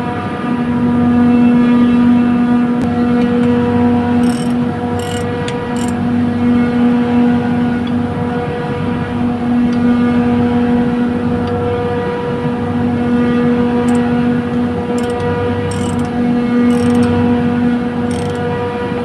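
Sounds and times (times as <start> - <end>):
chiller compressor hum: 2.8 - 6.9, 10.8 - 19.0.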